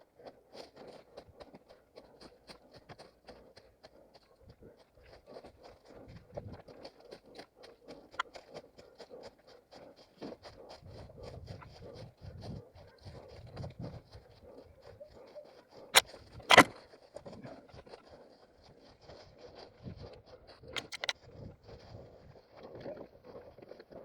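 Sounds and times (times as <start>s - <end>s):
running footsteps on forest ground: 0.0s - 24.0s
rustling underfoot: 0.0s - 24.0s
sharp click: 16.0s - 16.8s, 20.8s - 21.2s.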